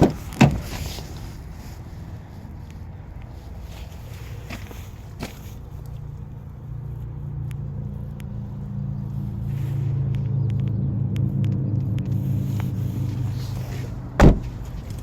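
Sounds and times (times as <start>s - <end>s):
engine humming: 0.0s - 15.0s.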